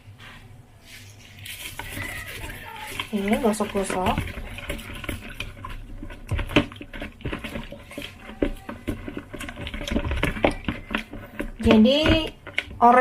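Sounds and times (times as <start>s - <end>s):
hands scrubbing an orange: 0.9s - 13.0s
water patter: 1.3s - 13.0s
small knocks: 1.8s - 13.0s.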